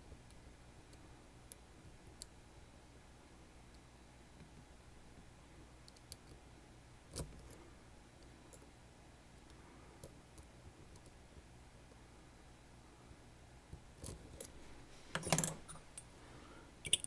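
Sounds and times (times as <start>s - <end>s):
metallic clicks of lock tools: 15.2s - 16.1s.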